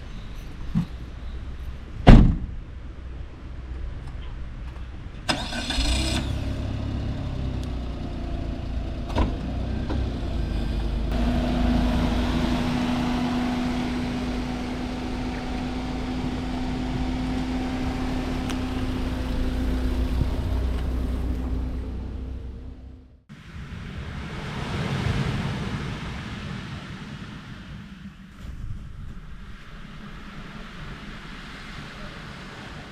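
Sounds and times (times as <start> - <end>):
van engine starting and idling: 5.2 - 23.3.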